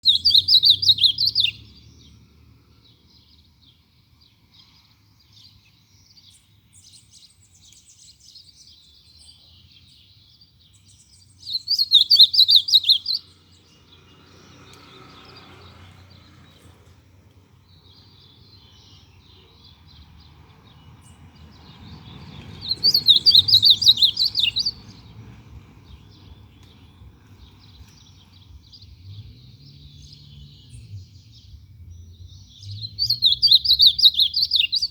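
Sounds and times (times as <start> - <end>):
songbird warbling: 0.0 - 1.6, 10.8 - 13.8, 22.6 - 25.1, 32.3 - 34.9
faint bird chirps: 3.2 - 13.8.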